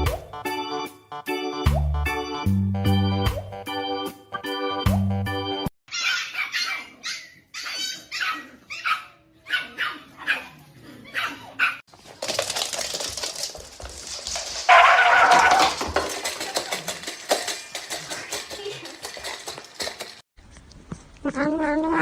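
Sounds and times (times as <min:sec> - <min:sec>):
organ music: 0:00.0 - 0:05.7
dog barking: 0:05.9 - 0:11.8.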